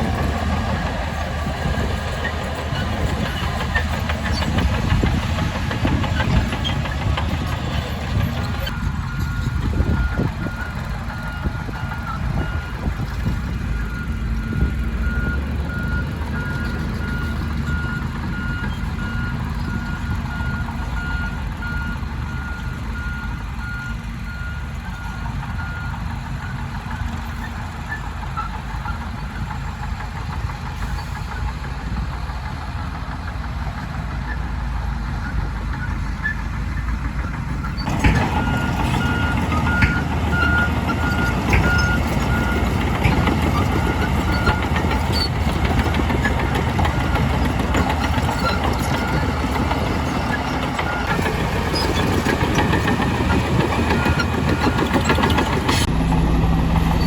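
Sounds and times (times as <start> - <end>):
heavy diesel machinery rumbling: 0.0 - 57.0
reversing alarm beeping: 37.6 - 56.2.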